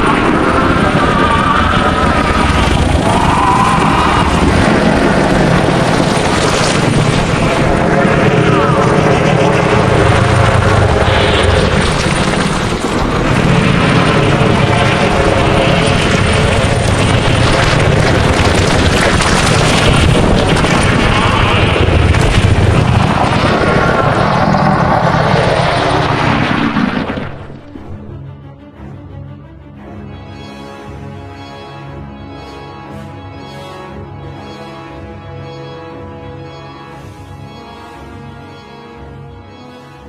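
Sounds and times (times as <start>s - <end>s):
rumbling growling creature: 0.0s - 28.2s.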